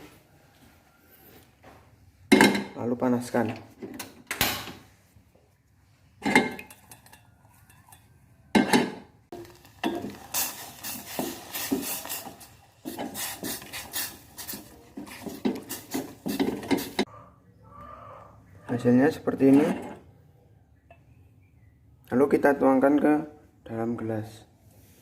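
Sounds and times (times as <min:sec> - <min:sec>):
cooking pot and utensil clinking: 0:02.3 - 0:02.8, 0:06.2 - 0:17.1.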